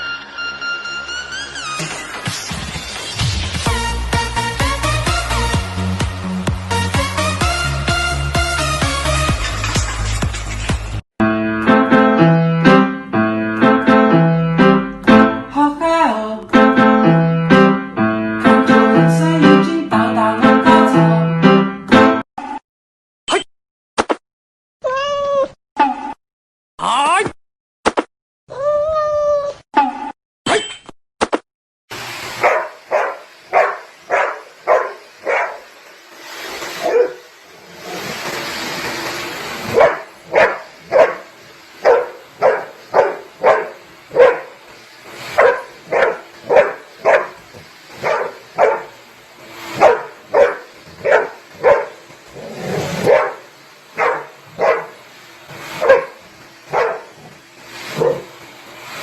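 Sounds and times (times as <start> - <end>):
dog barking: 32.4 - 35.7, 36.8 - 37.3, 39.6 - 44.6, 45.4 - 49.0, 49.8 - 52.0, 52.6 - 55.0, 55.8 - 57.4, 58.0 - 58.3.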